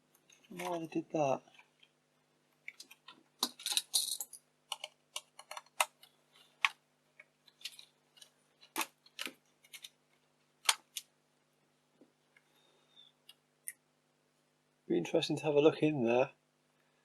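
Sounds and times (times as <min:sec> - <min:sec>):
small parts clicking and tapping: 0:02.6 - 0:10.0.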